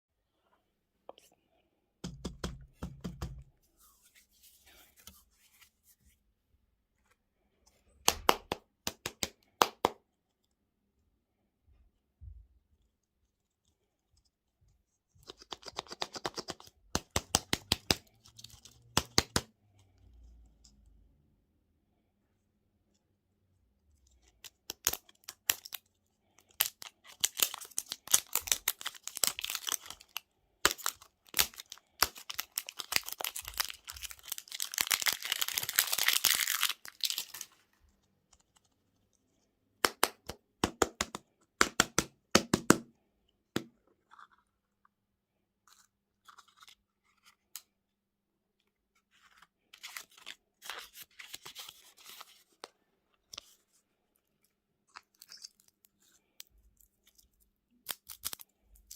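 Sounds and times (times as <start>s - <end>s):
crunching and chewing sweets: 24.1s - 39.4s, 54.1s - 58.9s.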